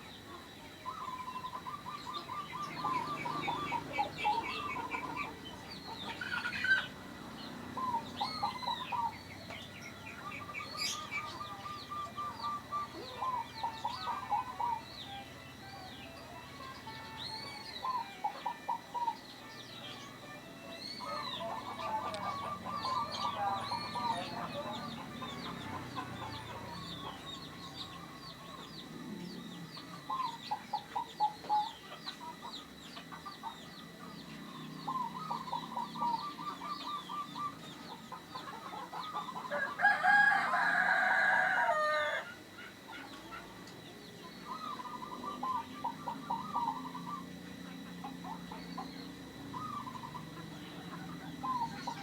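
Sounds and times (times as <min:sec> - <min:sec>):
dove cooing: 0:00.0 - 0:52.0
small birds chirping: 0:00.0 - 0:52.0
rooster crowing: 0:20.8 - 0:28.8, 0:38.1 - 0:42.9.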